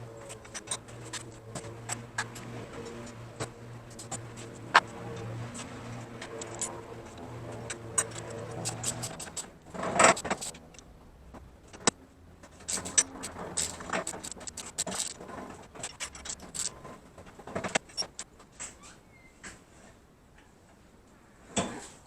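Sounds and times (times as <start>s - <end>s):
metal parts and tools clinking: 0.0s - 10.8s, 11.7s - 18.3s.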